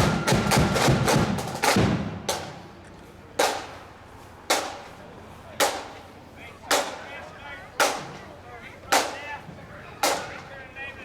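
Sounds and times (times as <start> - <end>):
marching band drums: 0.0 - 2.8, 3.4 - 4.9, 6.7 - 7.0, 7.8 - 8.2, 8.9 - 10.5.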